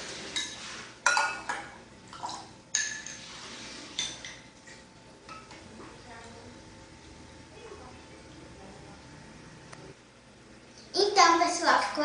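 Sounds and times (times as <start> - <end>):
dishes and spoon clinking: 0.0 - 5.7.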